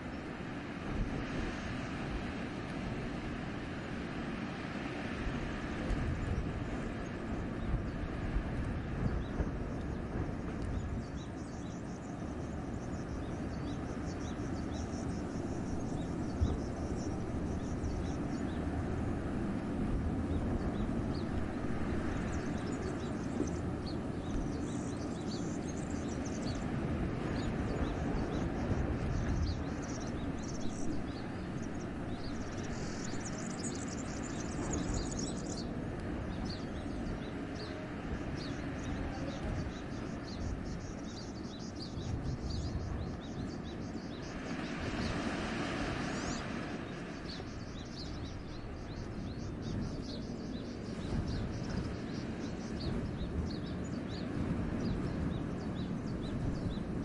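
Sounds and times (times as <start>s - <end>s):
wind through forest: 0.0s - 57.0s
faint bird chirps: 20.4s - 56.9s.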